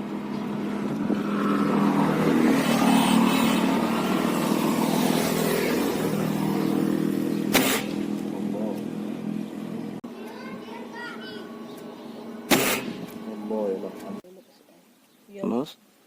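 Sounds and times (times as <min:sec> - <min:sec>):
vehicle engine running: 0:00.0 - 0:14.2
steady hum: 0:05.6 - 0:14.2
pellet rifle shot: 0:07.5 - 0:08.0, 0:12.5 - 0:13.0.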